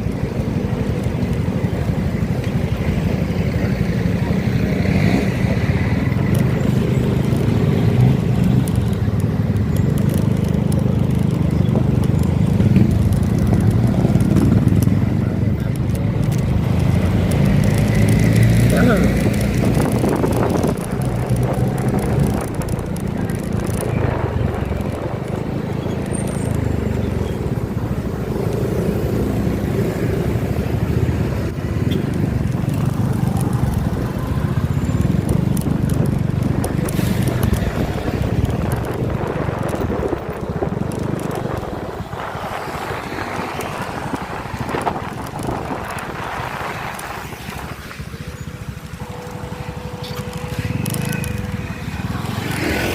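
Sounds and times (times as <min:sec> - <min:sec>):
road and wind noise: 0:00.0 - 0:52.9
vehicle engine running: 0:43.8 - 0:52.9.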